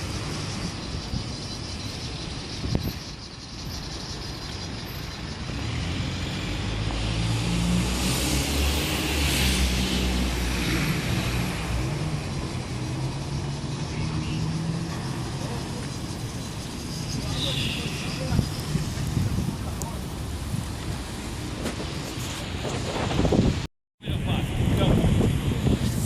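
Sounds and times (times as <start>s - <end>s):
vehicle passing: 5.4s - 21.5s.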